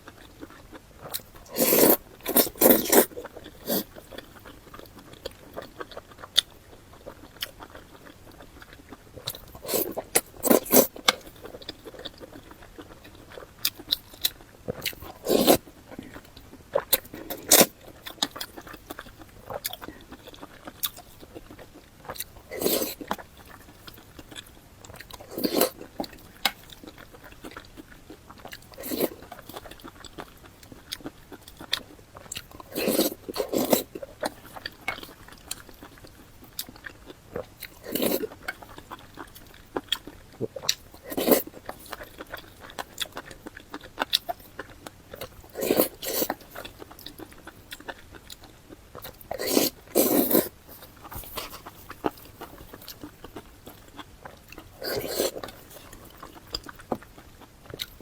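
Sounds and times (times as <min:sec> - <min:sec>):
person chewing: 0:00.0 - 0:58.0.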